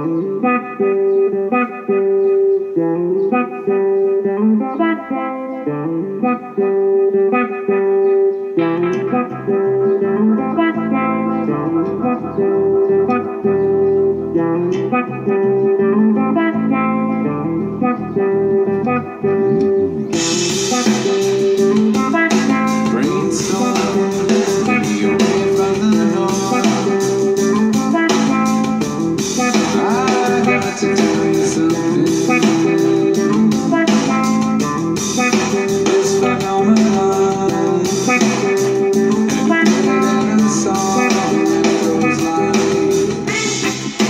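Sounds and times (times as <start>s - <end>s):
guitar-led music through speaker: 0.0s - 44.0s
drums: 18.9s - 44.0s.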